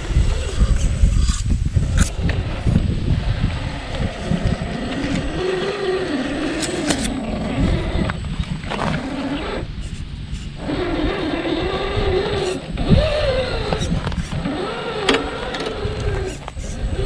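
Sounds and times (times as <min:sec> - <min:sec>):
steady low rumble: 0:00.0 - 0:11.0
electric motor whining: 0:00.0 - 0:17.0.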